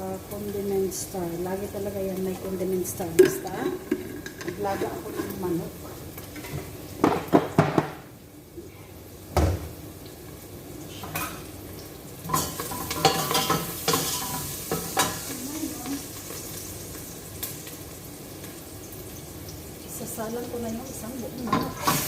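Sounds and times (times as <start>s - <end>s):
spices sizzling in a pot: 0.0s - 22.0s
metal utensil scraping a pot: 3.3s - 5.6s
knock: 7.0s - 8.0s.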